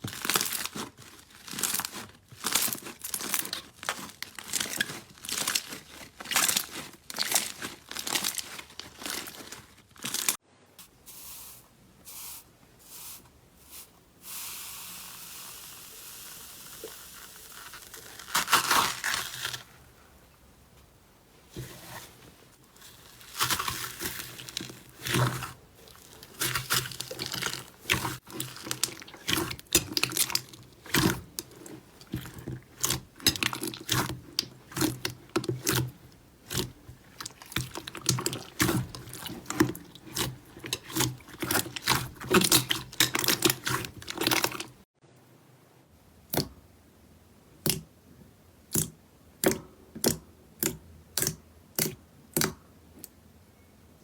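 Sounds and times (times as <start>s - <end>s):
slime squished by hand: 0.1s - 10.4s, 23.1s - 44.8s.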